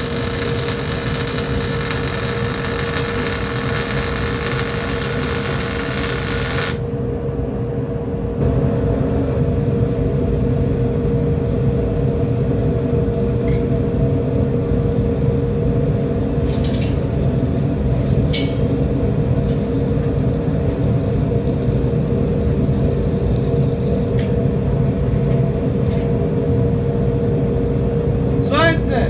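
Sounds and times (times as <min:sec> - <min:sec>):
low mechanical hum: 0:00.0 - 0:29.0.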